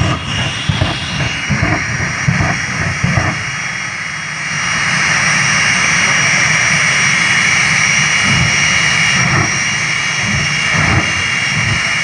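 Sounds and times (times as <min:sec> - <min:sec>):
jet engine whine and roar: 0:00.0 - 0:12.0.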